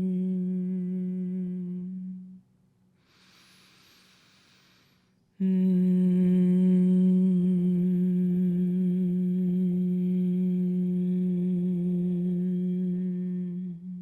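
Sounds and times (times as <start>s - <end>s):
person humming one note: 0.0s - 2.4s, 5.4s - 14.0s.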